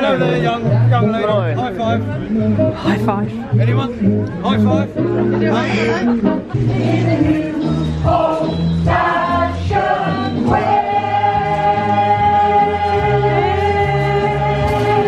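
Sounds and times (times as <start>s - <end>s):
voices singing long notes: 5.0s - 15.0s.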